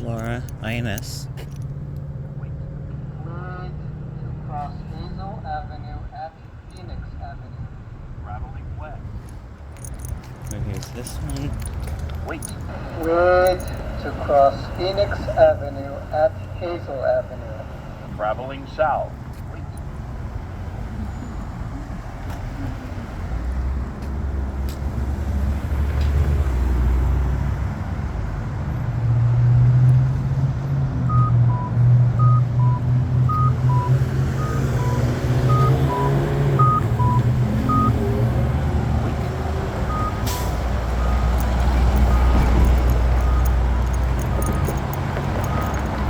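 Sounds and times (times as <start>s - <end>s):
road traffic: 0.0s - 46.0s
two-tone beep: 31.1s - 38.0s, 39.9s - 40.3s
heavy vehicle engine running: 31.1s - 46.0s.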